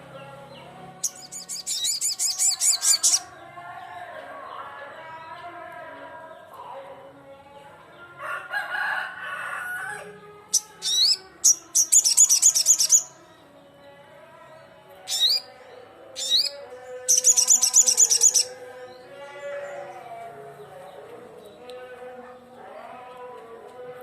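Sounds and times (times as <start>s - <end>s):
sunbird singing: 0.0s - 3.4s, 10.5s - 13.4s, 15.0s - 21.7s.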